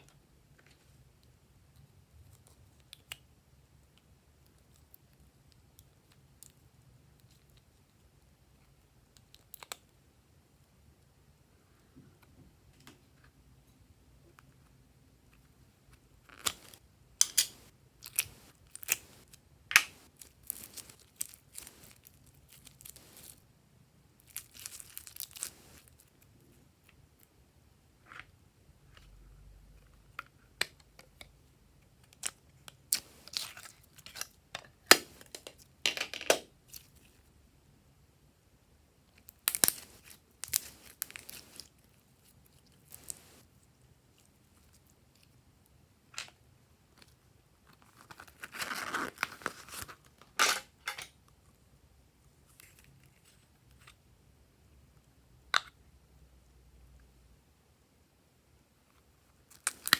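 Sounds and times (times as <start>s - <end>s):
slime popping and crackling: 16.4s - 23.4s, 39.3s - 41.7s.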